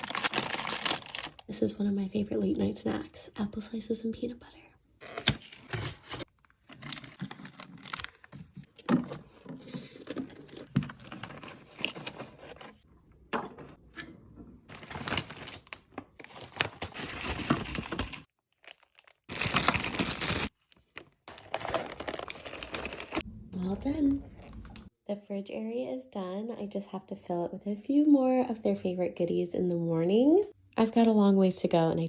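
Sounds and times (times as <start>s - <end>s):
plastic packaging crinkling: 0.0s - 1.4s, 5.0s - 8.7s, 14.7s - 23.2s.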